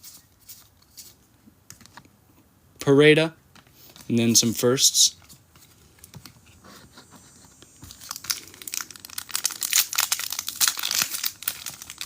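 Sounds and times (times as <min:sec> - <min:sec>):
foil wrapper crinkling: 0:07.8 - 0:12.0.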